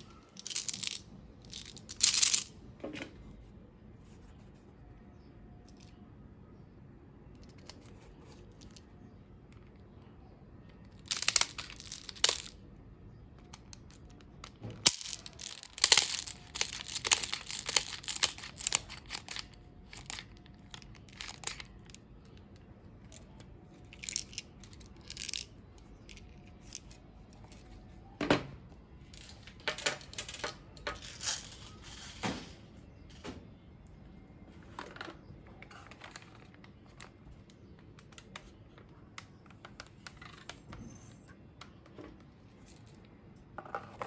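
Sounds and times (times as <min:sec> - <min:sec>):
plastic clicking and rattling: 0:10.7 - 0:12.6, 0:13.4 - 0:27.6.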